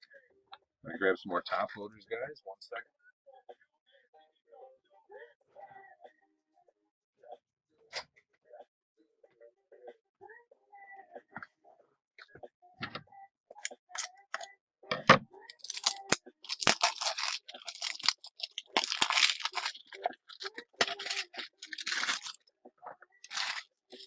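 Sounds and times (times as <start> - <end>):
plastic packaging crinkling: 15.5 - 22.4, 23.2 - 24.0.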